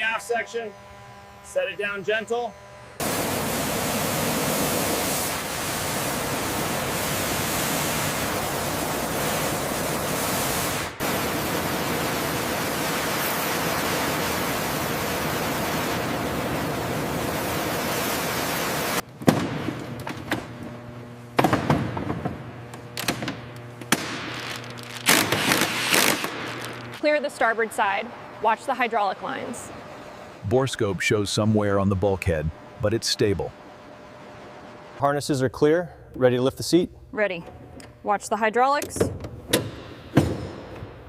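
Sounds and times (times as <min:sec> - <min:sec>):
loud rushing hiss: 0:03.0 - 0:19.0.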